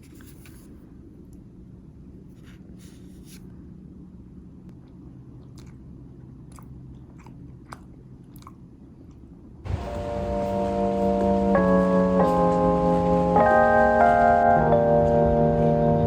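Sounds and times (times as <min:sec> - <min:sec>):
soft handling rustles: 0:00.0 - 0:01.0
steady low hum: 0:00.0 - 0:16.0.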